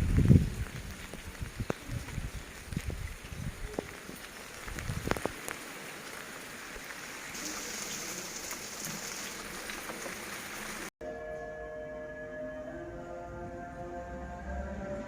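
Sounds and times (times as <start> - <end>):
heavy rain hissing: 0.0 - 10.9.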